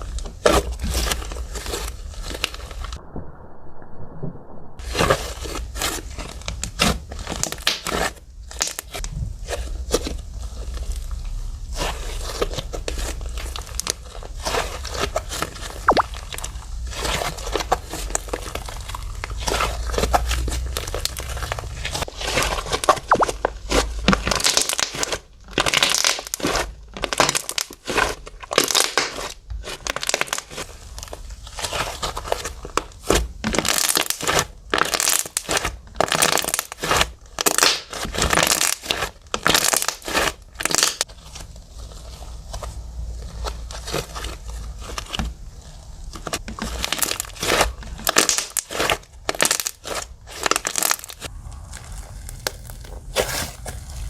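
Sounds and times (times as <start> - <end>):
slime crackling and popping: 6.5 - 9.1, 11.7 - 41.2, 46.2 - 54.0.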